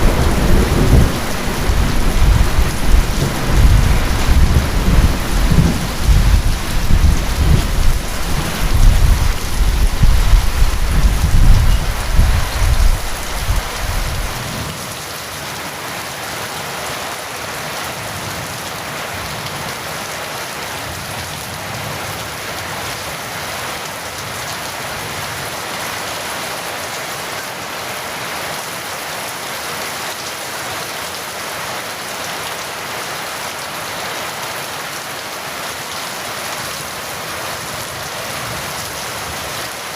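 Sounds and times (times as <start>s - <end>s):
rolling thunder: 0.0s - 14.6s
heavy rain: 0.0s - 39.9s.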